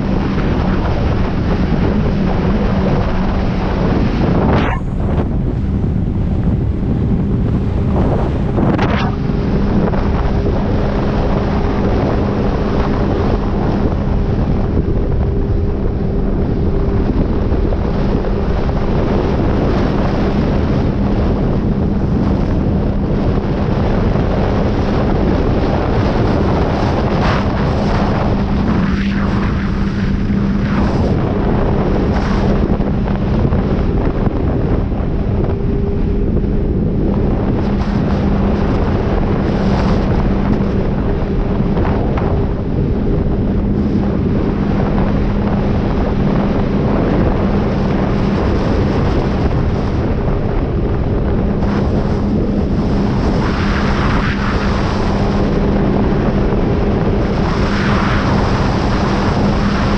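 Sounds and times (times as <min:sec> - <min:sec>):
jet ski engine humming: 0:00.0 - 0:59.9
wind noise on microphone: 0:00.0 - 0:59.9.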